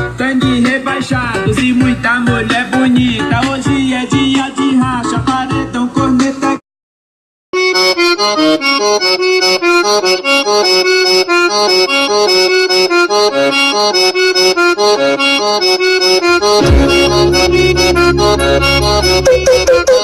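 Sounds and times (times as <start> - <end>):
accordion melody: 7.6 - 20.0
heavy bass: 16.4 - 20.0
clicking beat: 16.6 - 20.0.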